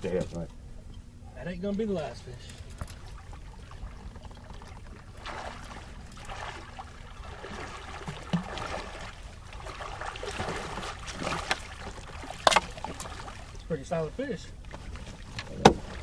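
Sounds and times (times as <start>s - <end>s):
water splashing and trickling: 1.7s - 16.0s
knocks against boat: 15.3s - 16.0s.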